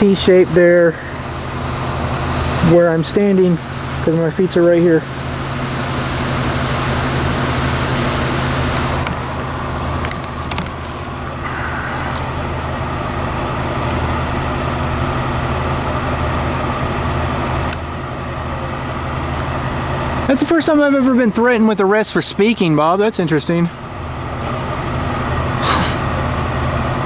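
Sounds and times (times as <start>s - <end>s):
vehicle engine idling: 0.0s - 27.0s.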